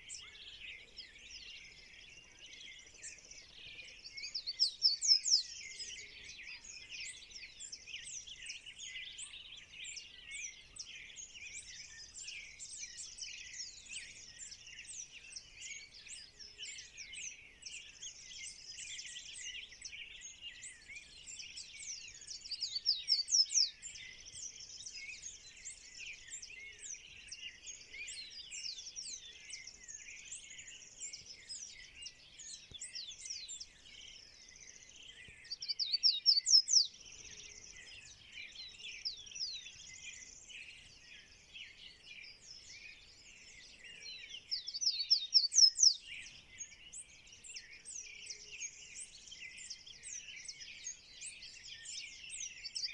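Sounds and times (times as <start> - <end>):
birds chirping and whistling: 18.8 - 52.9.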